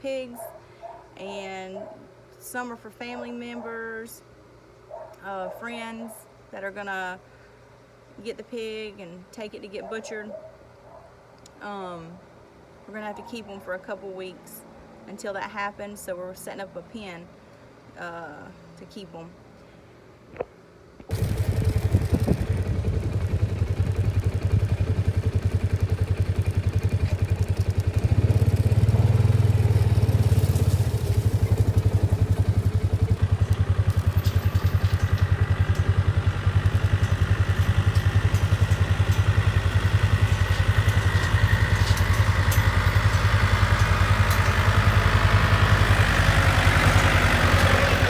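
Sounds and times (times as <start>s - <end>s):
vehicle engine running: 21.1s - 48.0s.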